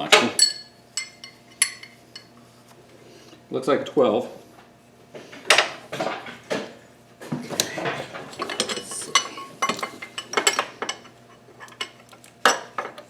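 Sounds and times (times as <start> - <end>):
metal tools clinking: 7.6 - 12.0.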